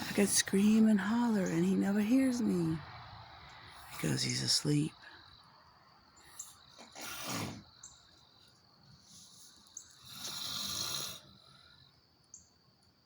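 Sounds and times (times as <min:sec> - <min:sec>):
man snoring: 0:10.1 - 0:11.3.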